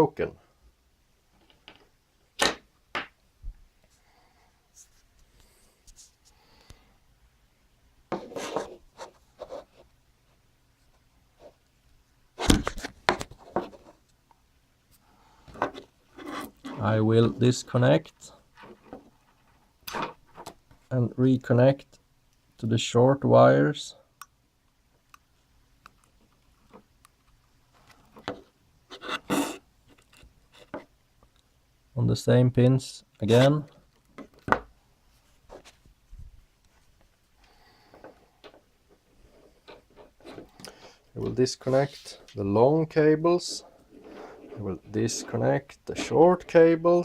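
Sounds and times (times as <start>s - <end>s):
electronics and cables handled on desk: 1.3s - 3.2s, 8.1s - 11.8s, 12.4s - 20.9s, 24.2s - 31.5s, 33.2s - 42.4s, 43.2s - 47.0s.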